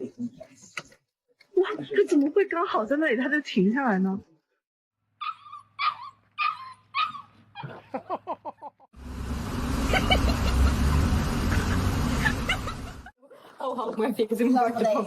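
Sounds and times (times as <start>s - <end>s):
dog yipping: 5.2s - 7.8s.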